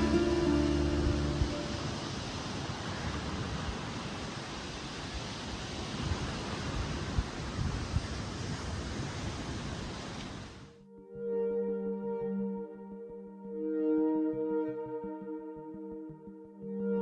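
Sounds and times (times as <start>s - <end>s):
background music: 0.0s - 1.9s, 10.8s - 17.0s
wind thumping on microphone: 0.0s - 10.6s
surf rushing: 0.0s - 10.7s.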